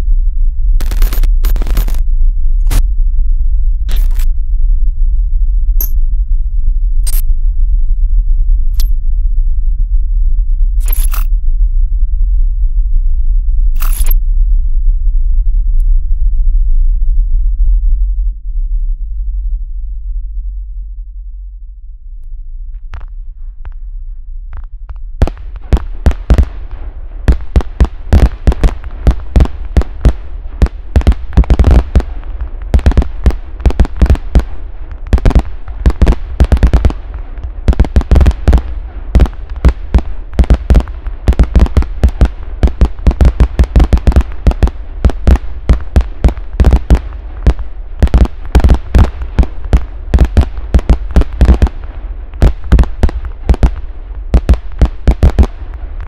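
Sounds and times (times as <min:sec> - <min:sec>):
low rumble: 0:00.0 - 0:56.0
firework bangs: 0:25.2 - 0:56.0.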